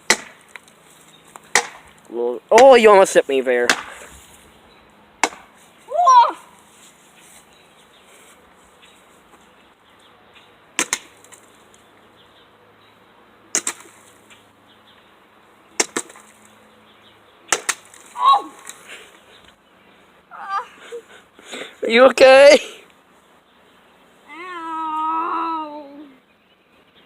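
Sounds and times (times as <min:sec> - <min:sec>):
chopping into wood: 0:00.1 - 0:00.4, 0:01.5 - 0:01.8, 0:03.6 - 0:04.0, 0:05.2 - 0:05.5, 0:10.8 - 0:11.1, 0:15.8 - 0:16.2, 0:17.5 - 0:17.9.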